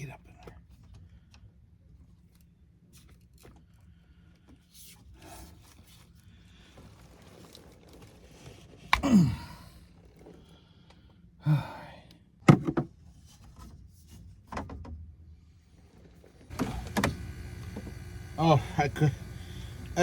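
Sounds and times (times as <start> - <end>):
man grunting: 9.0 - 9.6, 11.4 - 12.0.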